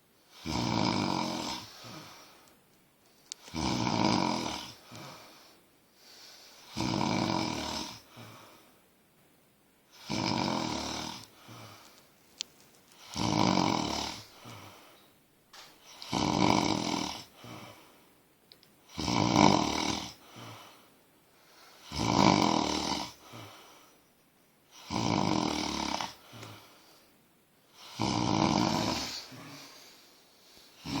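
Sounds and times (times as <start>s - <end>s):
person snoring: 0.3s - 2.3s, 3.4s - 5.4s, 6.6s - 8.4s, 10.0s - 11.8s, 13.0s - 14.7s, 15.9s - 17.8s, 18.9s - 20.8s, 21.7s - 23.6s, 24.8s - 26.6s, 27.7s - 30.0s, 30.7s - 31.0s.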